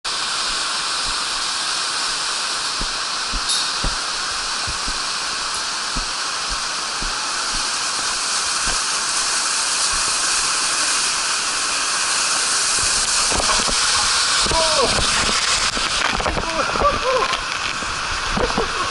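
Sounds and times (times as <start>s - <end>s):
water rushing down a slide: 0.1s - 18.9s
soft low thumps: 0.4s - 1.5s, 2.8s - 8.8s.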